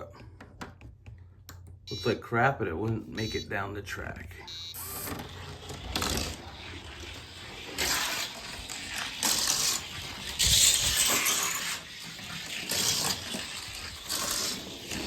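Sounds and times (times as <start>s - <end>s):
toy car rolling on track: 4.8s - 15.0s.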